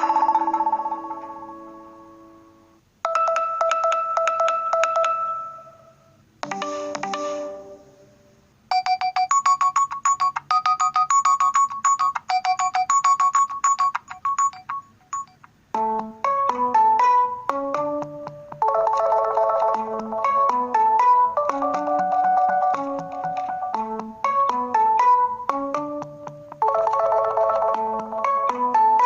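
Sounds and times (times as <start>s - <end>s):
phone alarm tones: 3.1s - 7.8s, 8.7s - 15.4s.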